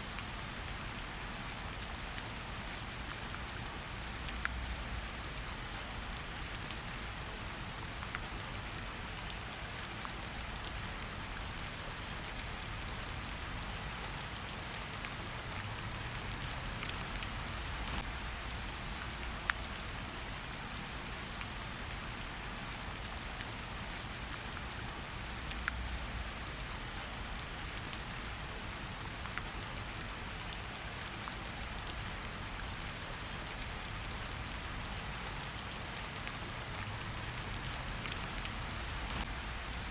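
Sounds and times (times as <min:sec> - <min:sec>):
heavy rain: 0:00.0 - 0:39.9
raindrops ticking: 0:12.2 - 0:22.4, 0:23.0 - 0:29.5, 0:30.4 - 0:39.9.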